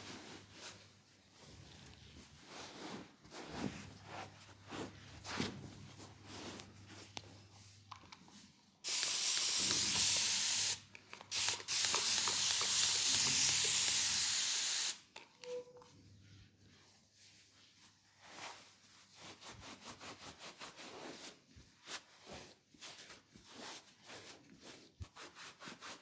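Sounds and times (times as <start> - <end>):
spray hissing: 8.8 - 15.0.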